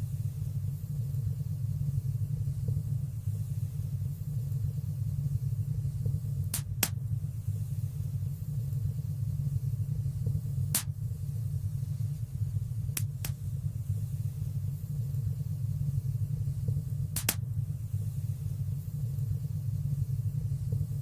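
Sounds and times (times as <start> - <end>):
fire crackling pops: 6.0 - 7.3, 10.2 - 11.3, 12.2 - 13.7, 16.5 - 17.8.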